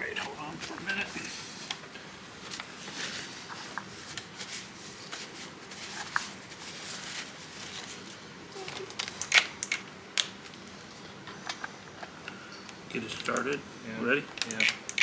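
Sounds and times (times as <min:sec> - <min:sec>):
tools clicking and scraping: 0:08.7 - 0:09.9, 0:14.4 - 0:15.0.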